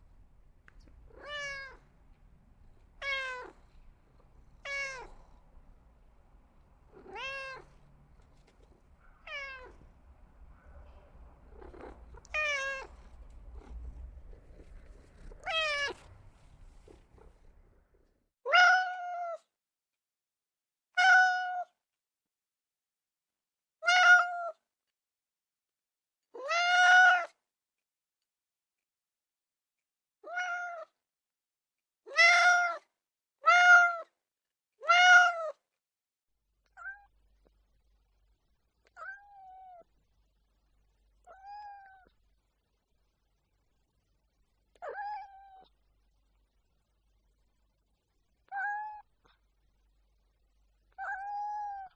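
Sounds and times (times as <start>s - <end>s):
faint background hum: 0.0s - 18.2s
cat meowing: 1.1s - 1.9s, 3.0s - 3.7s, 4.5s - 5.4s, 6.9s - 7.8s, 9.0s - 10.0s, 11.5s - 17.3s, 18.5s - 19.4s, 21.0s - 21.8s, 23.8s - 24.6s, 26.4s - 27.4s, 30.2s - 30.9s, 32.1s - 32.8s, 33.4s - 34.1s, 34.8s - 35.6s, 36.7s - 37.1s, 39.0s - 39.8s, 41.3s - 42.1s, 44.7s - 45.7s, 48.5s - 49.1s, 50.9s - 51.9s.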